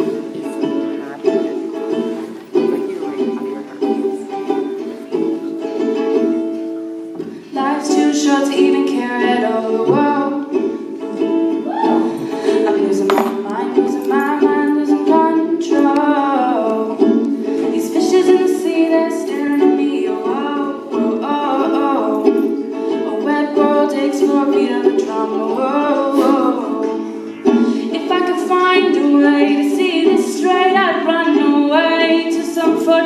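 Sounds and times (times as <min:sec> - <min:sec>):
ukulele strumming: 0:00.0 - 0:33.0
woman singing: 0:07.5 - 0:33.0.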